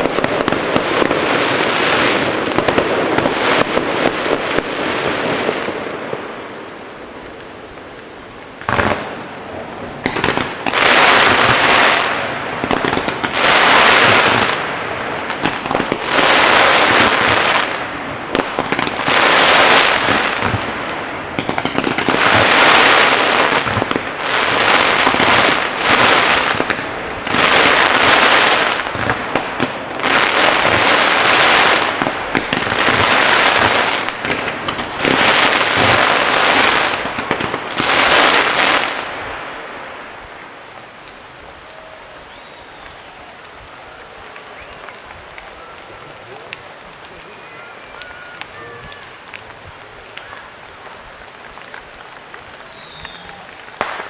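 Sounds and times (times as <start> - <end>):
fireworks crackling and hissing: 0.0 - 54.0
firework bang: 8.6 - 39.3, 53.3 - 54.0.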